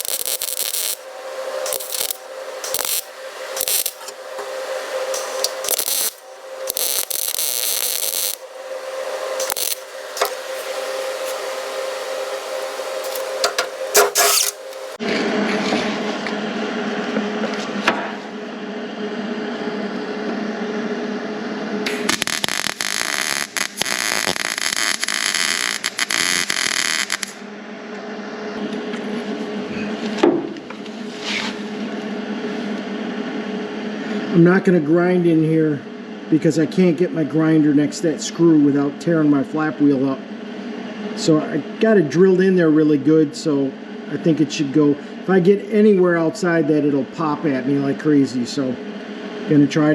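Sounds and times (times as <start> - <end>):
welder crackling sizzle: 0.0 - 15.0, 21.8 - 27.5.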